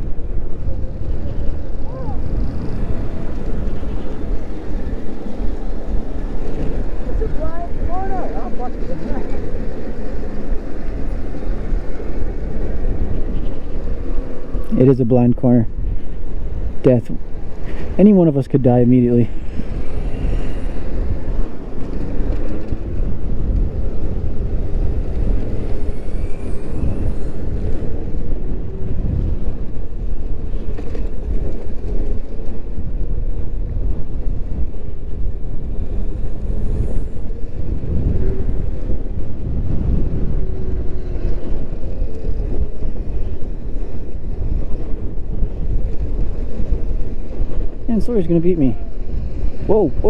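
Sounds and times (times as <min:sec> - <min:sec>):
wind rushing over microphone: 0:00.0 - 0:50.0
faint electric motor whine: 0:19.3 - 0:47.8.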